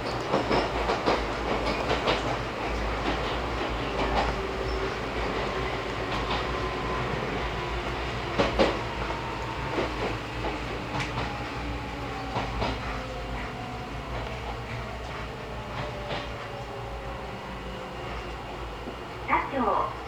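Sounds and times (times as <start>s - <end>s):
wheels clacking over rail joints: 0.0s - 17.0s
electric train rumbling: 0.0s - 20.0s.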